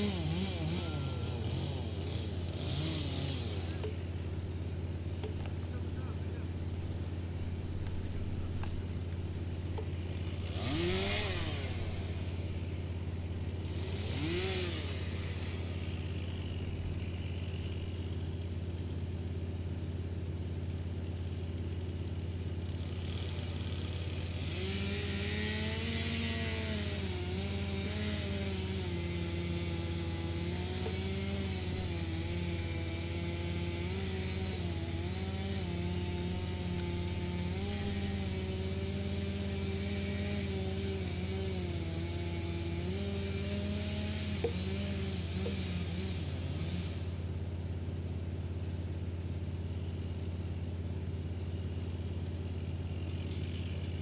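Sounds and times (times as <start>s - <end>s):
wood chipper engine running: 0.0s - 54.0s
wood chipping clatter: 5.2s - 5.8s, 30.4s - 31.4s, 43.6s - 46.0s.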